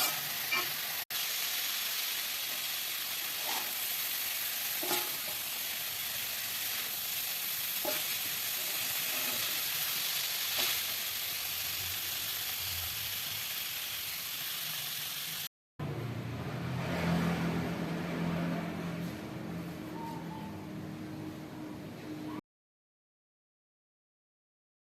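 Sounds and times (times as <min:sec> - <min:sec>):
food sizzling in a frying pan: 0:00.0 - 0:15.5.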